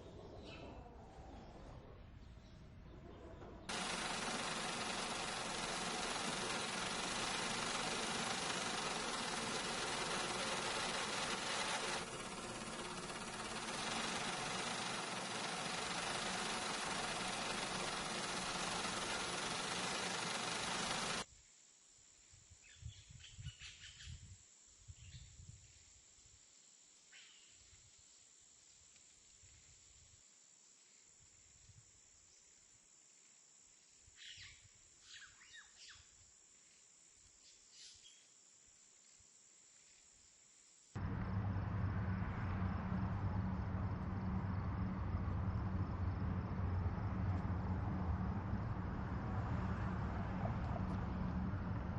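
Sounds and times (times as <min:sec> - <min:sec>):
low engine rumble with hum: 0:41.0 - 0:51.9.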